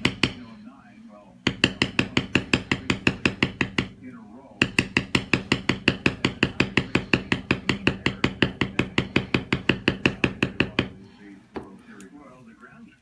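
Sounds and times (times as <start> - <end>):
mallet tapping leather stamping tool: 0.0 - 0.4, 1.4 - 4.0, 4.6 - 11.0.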